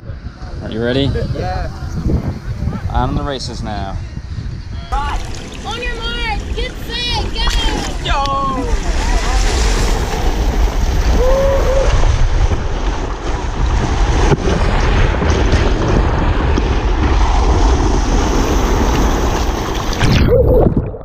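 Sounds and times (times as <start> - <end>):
wind noise on microphone: 0.0 - 21.0
rushing water: 4.9 - 14.6, 17.2 - 21.0
person whooping: 11.1 - 12.1.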